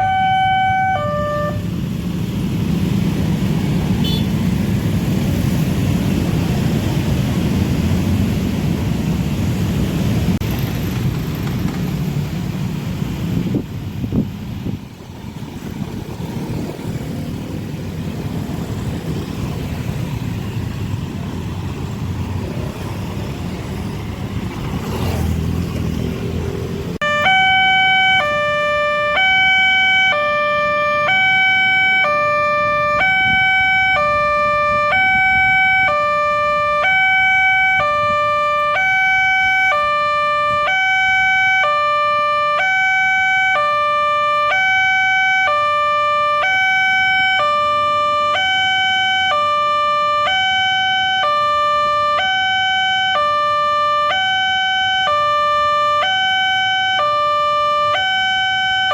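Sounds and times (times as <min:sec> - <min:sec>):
level crossing two-tone warning signal: 0:00.0 - 0:01.7, 0:27.0 - 0:58.9
faint road traffic: 0:00.0 - 0:58.9.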